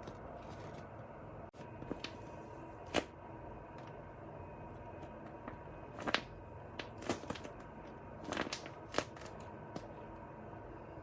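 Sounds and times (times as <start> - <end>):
paper crinkling and rustling: 0.0 - 1.0, 6.0 - 7.6, 8.2 - 9.5.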